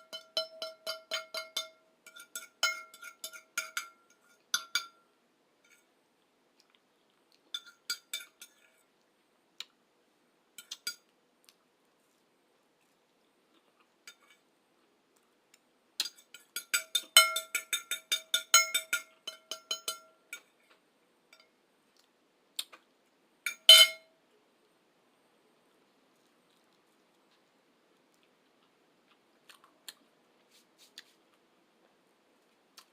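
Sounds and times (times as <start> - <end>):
metal cutlery clinking on dish: 0.0 - 5.0, 7.5 - 8.7, 16.0 - 20.5, 23.5 - 24.0.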